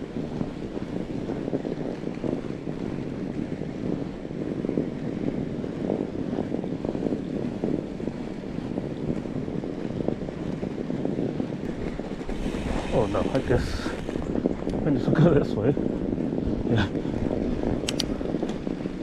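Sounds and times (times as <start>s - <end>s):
bike tyres rolling over snow: 0.0s - 19.0s.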